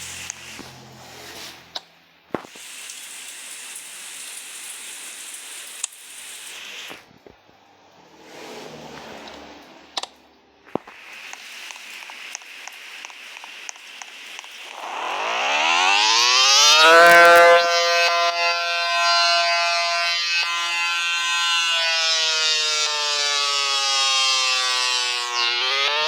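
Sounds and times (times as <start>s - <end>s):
siren wailing: 14.7s - 26.0s.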